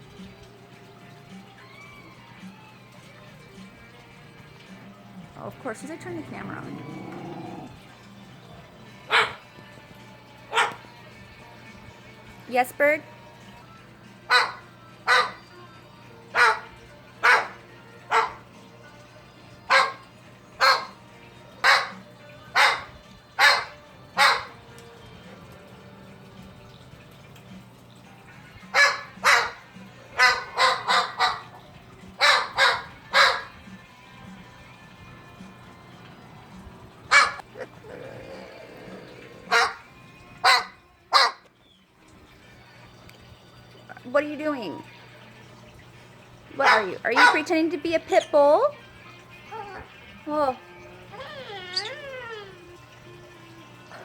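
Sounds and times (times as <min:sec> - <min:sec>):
dog barking: 0:09.1 - 0:09.5, 0:10.5 - 0:10.8, 0:14.3 - 0:15.5, 0:16.4 - 0:18.4, 0:19.7 - 0:21.0, 0:21.6 - 0:24.6, 0:28.7 - 0:31.6, 0:32.2 - 0:33.6, 0:37.1 - 0:37.8, 0:39.5 - 0:41.5, 0:46.6 - 0:47.5
small yelp: 0:14.3 - 0:15.5, 0:30.2 - 0:31.6, 0:51.1 - 0:52.8.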